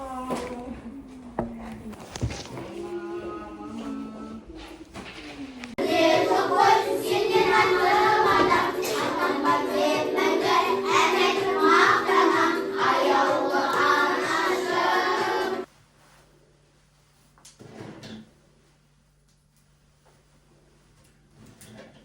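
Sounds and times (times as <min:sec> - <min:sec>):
children singing together: 0:05.8 - 0:15.7
music: 0:05.8 - 0:15.7.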